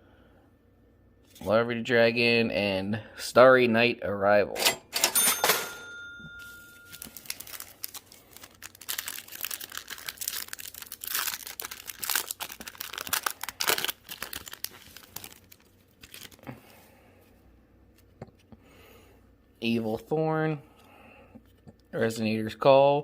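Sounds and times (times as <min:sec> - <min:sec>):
foil pack tearing and crinkling: 0:06.9 - 0:16.6.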